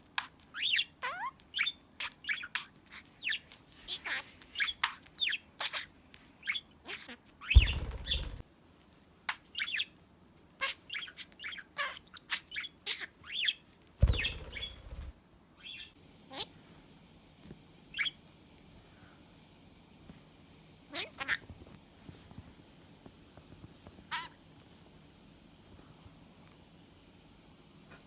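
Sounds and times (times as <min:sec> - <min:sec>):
budgerigar chirping and warbling: 0:06.9 - 0:08.4, 0:12.6 - 0:15.9
rustling bursts: 0:07.6 - 0:08.4, 0:14.0 - 0:15.1.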